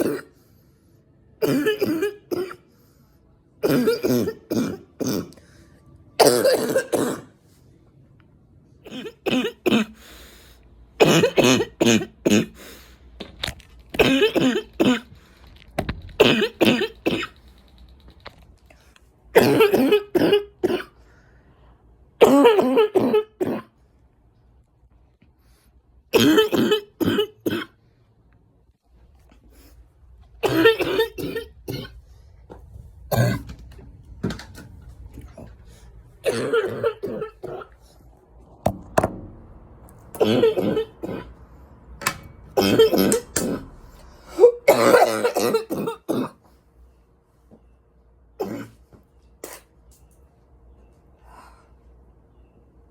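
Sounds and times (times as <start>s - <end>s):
woman coughing: 0.0s - 0.4s, 1.4s - 2.7s, 3.6s - 5.4s, 6.2s - 7.4s, 8.8s - 10.0s, 11.0s - 12.6s, 14.0s - 15.1s, 16.2s - 17.4s, 19.4s - 21.0s, 22.2s - 23.7s, 26.1s - 27.8s, 30.4s - 32.0s, 36.2s - 37.8s, 40.2s - 41.3s, 42.6s - 46.4s, 48.4s - 48.8s.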